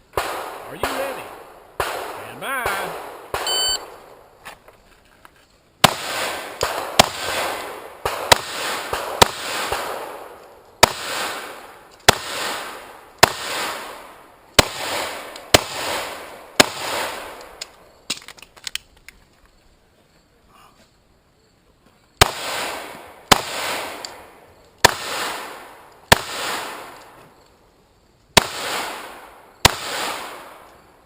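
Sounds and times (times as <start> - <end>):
pistol shots with echo: 0.1 - 4.0, 5.8 - 17.6, 22.2 - 27.0, 28.4 - 30.7.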